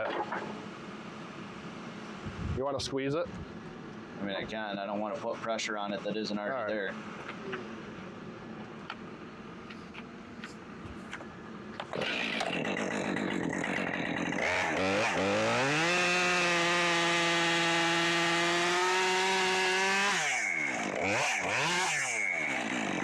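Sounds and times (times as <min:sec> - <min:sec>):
chainsaw cutting wood: 0:11.8 - 0:23.0.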